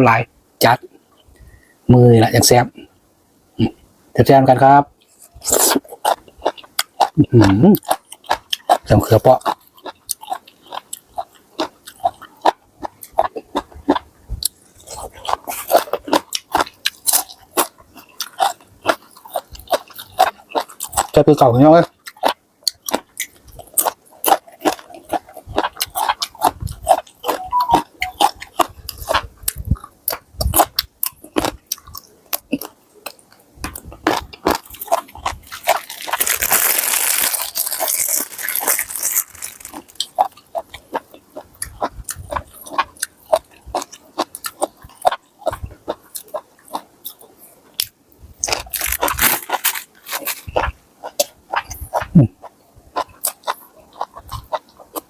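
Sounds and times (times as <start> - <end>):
chewing crunchy food: 5.0 - 55.0.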